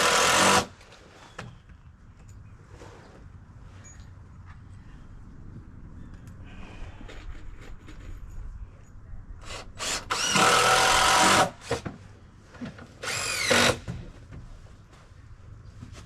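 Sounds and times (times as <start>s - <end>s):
power drill driving a screw: 0.0s - 0.7s, 9.4s - 11.8s, 13.0s - 13.9s.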